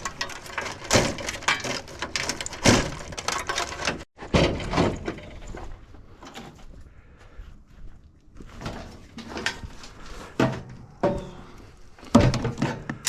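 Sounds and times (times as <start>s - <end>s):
sheet metal clanking and rattling: 0.0s - 5.7s.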